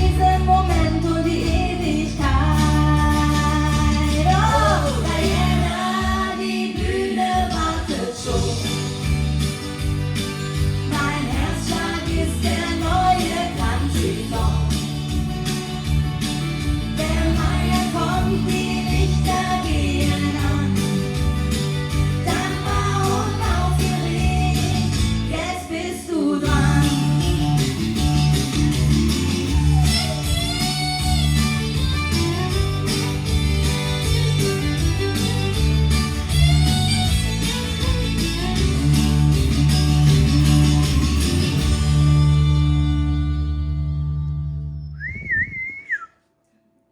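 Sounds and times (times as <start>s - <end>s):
harmony vocals: 0.0s - 9.3s, 10.8s - 15.1s, 16.9s - 27.9s
live country band playing: 0.0s - 25.6s, 26.4s - 44.6s.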